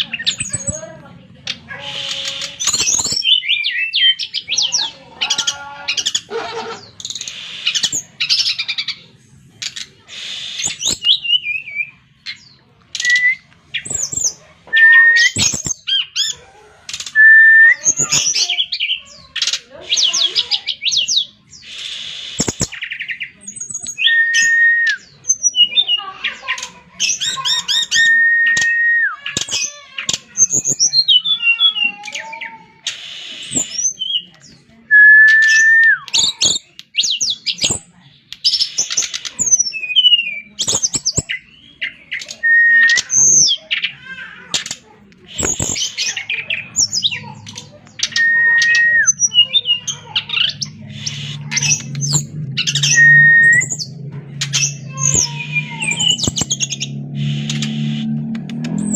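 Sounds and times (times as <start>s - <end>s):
bird song with whistles and trills: 0.0s - 0.8s, 1.9s - 4.8s, 10.1s - 16.3s, 19.9s - 26.0s, 26.6s - 29.7s, 30.4s - 43.8s, 47.9s - 58.9s.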